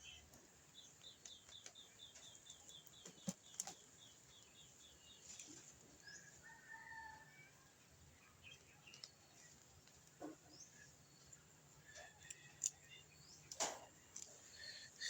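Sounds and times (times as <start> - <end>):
bird chirping: 0.0 - 6.4, 8.0 - 15.0.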